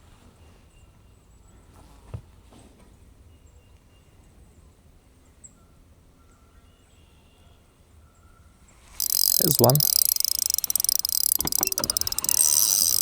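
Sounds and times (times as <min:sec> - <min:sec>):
small click: 0:09.0 - 0:13.0.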